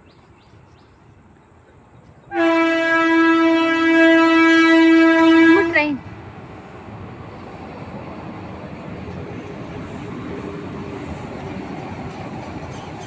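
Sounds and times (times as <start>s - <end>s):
train horn blast: 2.3s - 6.0s.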